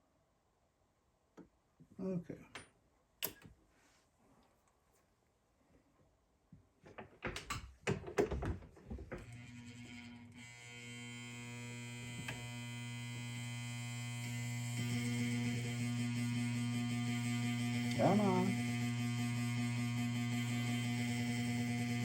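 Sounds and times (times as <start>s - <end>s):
sewing machine motor whirring: 9.2s - 22.0s.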